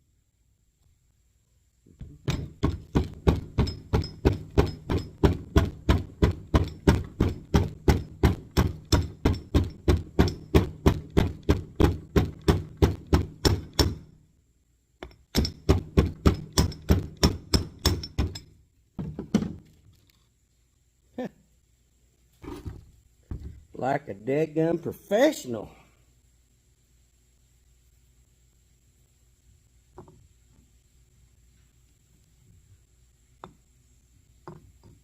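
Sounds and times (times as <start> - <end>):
hammer striking metal: 2.0 - 14.1, 15.0 - 18.5.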